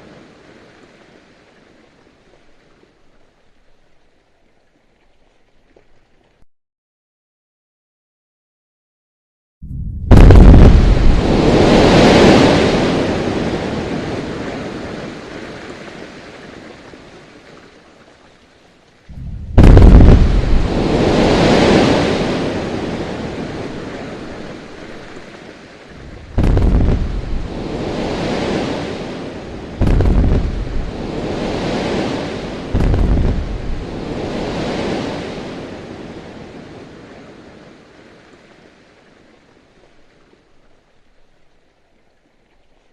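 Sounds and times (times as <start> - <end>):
blasting explosions with rumble: 9.6 - 14.0, 19.1 - 23.7, 26.0 - 35.1.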